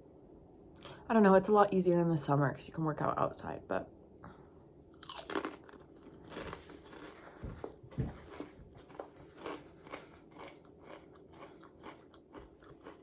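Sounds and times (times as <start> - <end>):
crunchy chewing: 4.9 - 7.5, 8.2 - 13.0.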